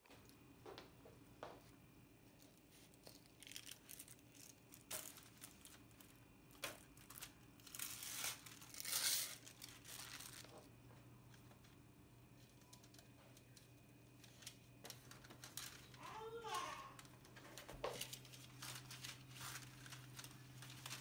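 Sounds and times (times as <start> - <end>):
packaging crinkling and tearing: 2.7 - 10.7, 14.2 - 21.0.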